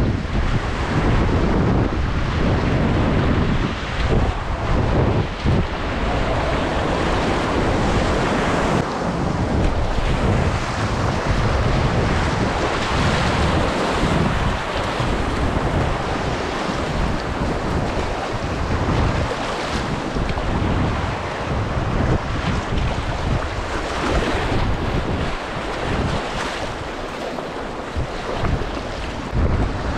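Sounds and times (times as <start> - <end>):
rapids rushing and splashing: 0.0 - 29.9
wind buffeting microphone: 0.0 - 29.9.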